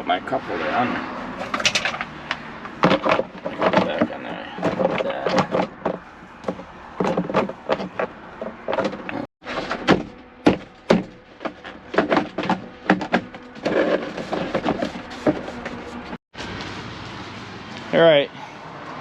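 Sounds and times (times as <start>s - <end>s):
plastic parts knocking and clicking: 1.5s - 9.2s.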